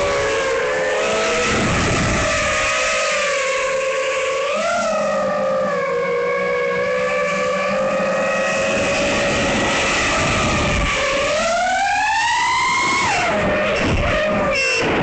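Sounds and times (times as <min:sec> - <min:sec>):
quadcopter motors whining: 0:00.0 - 0:15.0
wind rumble: 0:01.2 - 0:02.9, 0:08.5 - 0:15.0.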